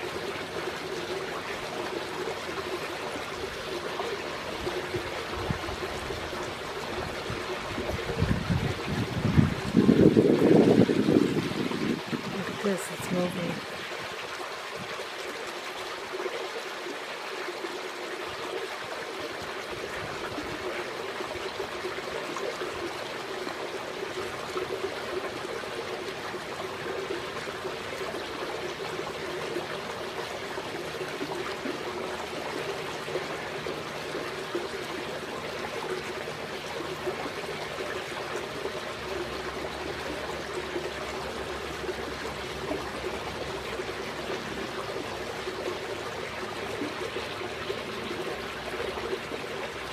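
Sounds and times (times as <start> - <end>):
trickle of running water: 0.0 - 49.9.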